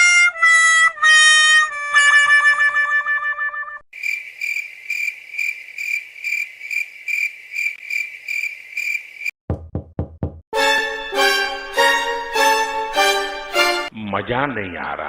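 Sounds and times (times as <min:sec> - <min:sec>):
crickets chirping: 0:03.9 - 0:09.4
quick low knocks: 0:09.5 - 0:10.4.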